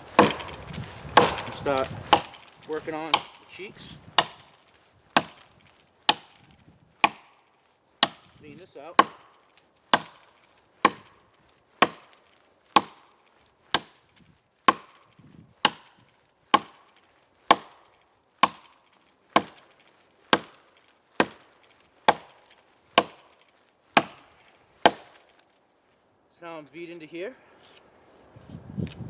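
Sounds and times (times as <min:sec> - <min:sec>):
axe chopping into a log: 0:00.1 - 0:04.6, 0:05.2 - 0:05.5, 0:06.1 - 0:07.4, 0:08.0 - 0:11.2, 0:11.8 - 0:12.2, 0:12.8 - 0:13.1, 0:13.7 - 0:14.0, 0:14.7 - 0:16.9, 0:17.5 - 0:19.7, 0:20.3 - 0:20.6, 0:21.2 - 0:21.5, 0:22.1 - 0:25.3.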